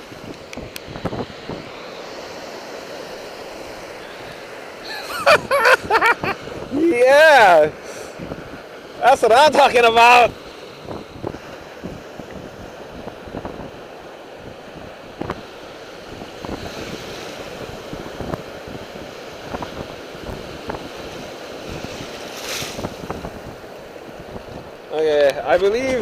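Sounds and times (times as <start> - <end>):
surf washing on beach: 0.0 - 26.0
wind buffeting microphone: 0.0 - 26.0.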